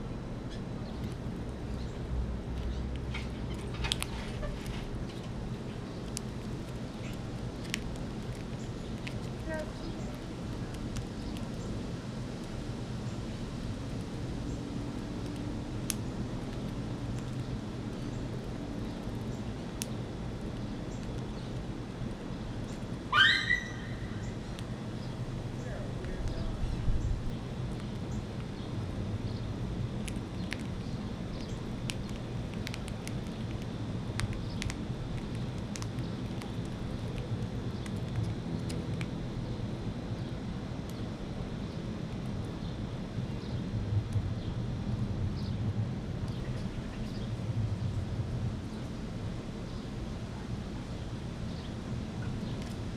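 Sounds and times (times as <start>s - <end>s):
low background rumble: 0.0s - 52.9s
seed shells cracking: 29.9s - 39.2s.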